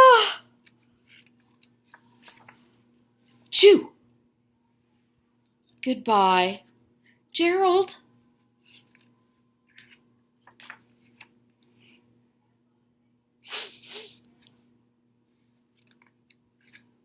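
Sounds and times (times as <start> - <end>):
faint clicks and rustles: 0.6 - 3.5, 8.2 - 12.0, 15.4 - 17.0.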